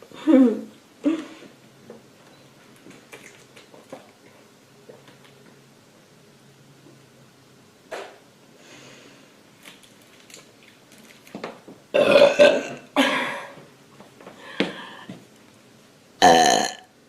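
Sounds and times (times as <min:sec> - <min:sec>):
girl burping loudly: 0:12.0 - 0:13.6, 0:16.2 - 0:16.9.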